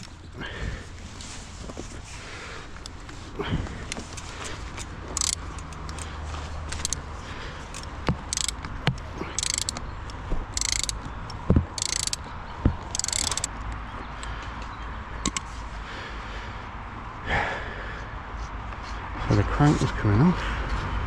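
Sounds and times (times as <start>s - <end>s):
freehub ratchet clicking: 3.9s - 14.3s, 15.2s - 15.5s.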